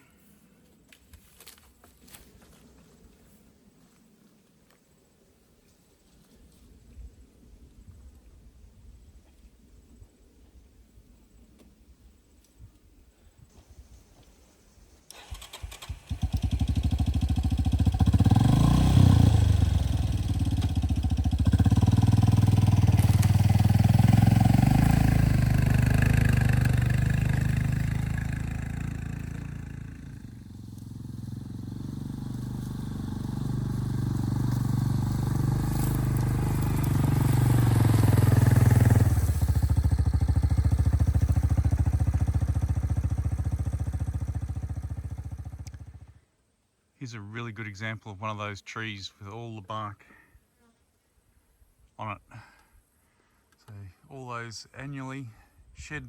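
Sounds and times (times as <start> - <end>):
engine revving: 15.2 - 46.1.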